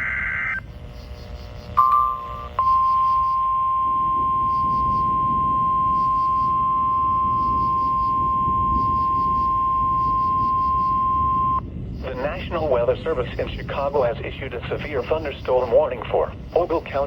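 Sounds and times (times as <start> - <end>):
high alarm tone: 0.0 - 13.2
radio static hiss: 0.0 - 17.0.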